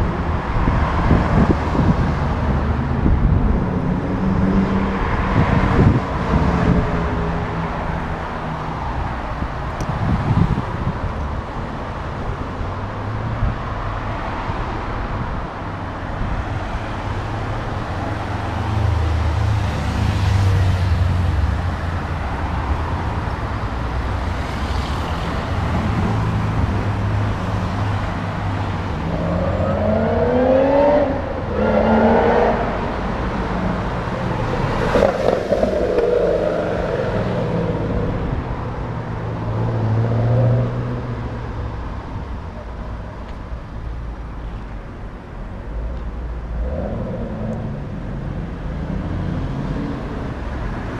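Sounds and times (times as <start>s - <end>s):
loud car passing: 16.1s - 42.2s.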